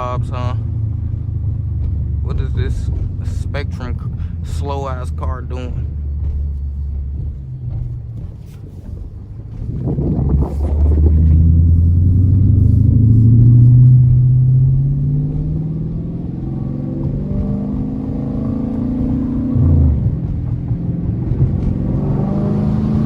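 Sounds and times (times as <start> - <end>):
car engine accelerating hard: 0.0 - 23.0.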